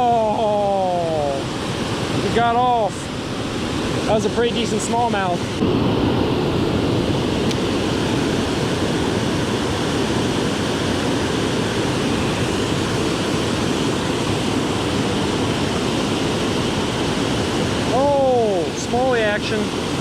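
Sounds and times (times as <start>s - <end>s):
river water pouring over dam: 6.5s - 20.0s.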